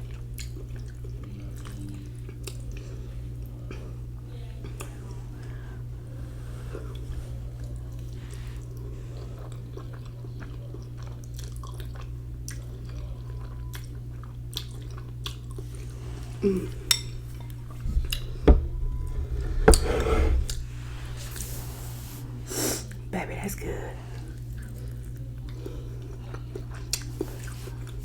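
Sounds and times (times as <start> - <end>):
chewing noodles: 0.0 - 5.6, 6.4 - 18.3, 24.2 - 28.0
louder knocks: 17.9 - 20.5.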